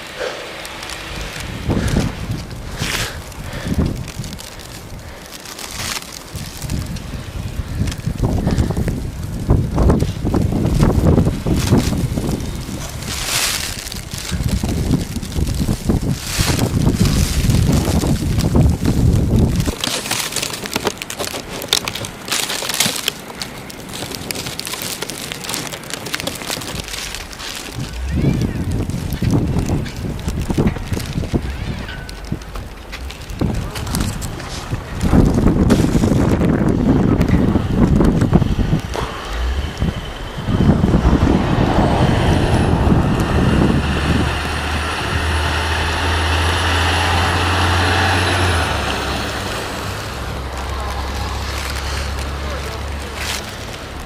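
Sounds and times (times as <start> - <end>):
crunching in snow: 0.0 - 54.0
wind gusting on microphone: 0.0 - 54.0
rushing noise: 26.2 - 54.0.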